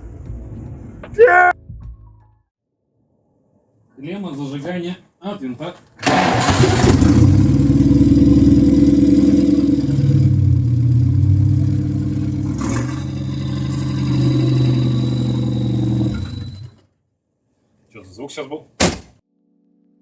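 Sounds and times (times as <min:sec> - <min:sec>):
engine running: 0:06.0 - 0:16.8.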